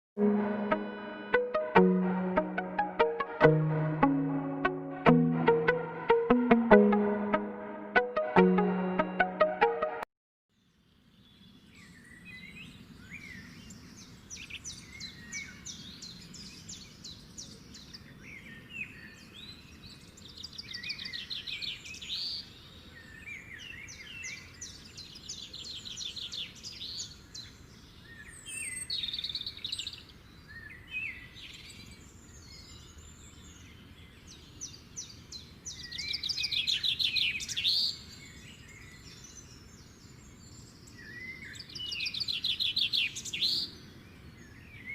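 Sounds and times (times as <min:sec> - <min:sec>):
songbirds chirping and trilling: 0:10.8 - 0:44.9.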